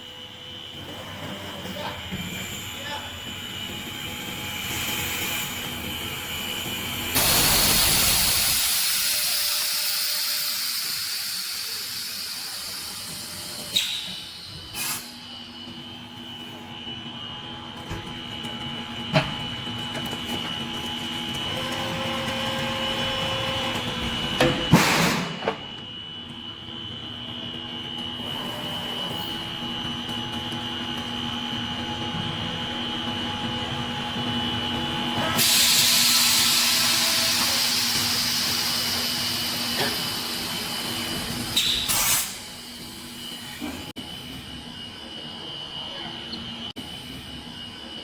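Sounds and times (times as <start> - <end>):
machine hum and whine: 0.0 - 48.0
compressed air hissing: 7.1 - 13.1
short air releases: 13.7 - 15.2, 41.6 - 42.4.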